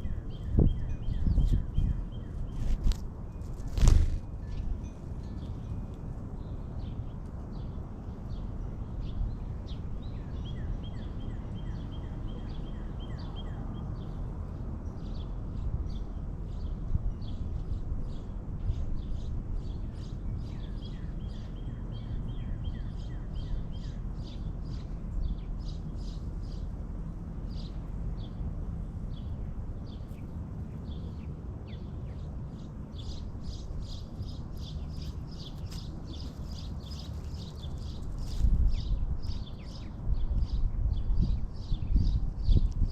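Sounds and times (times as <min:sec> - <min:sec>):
low outdoor rumble: 0:00.0 - 0:11.2, 0:13.3 - 0:42.9
birds chirping: 0:29.1 - 0:40.3.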